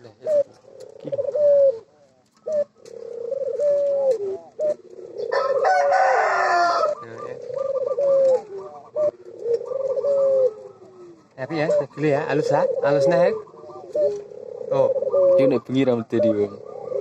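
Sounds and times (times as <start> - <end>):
rooster crowing: 5.2 - 8.2.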